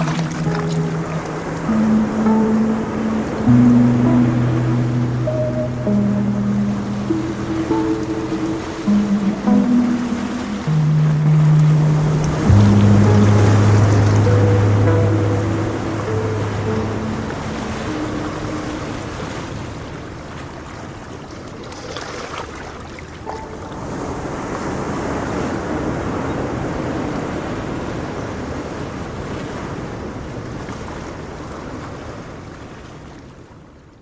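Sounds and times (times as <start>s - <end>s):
ocean waves washing on shore: 0.0s - 33.8s.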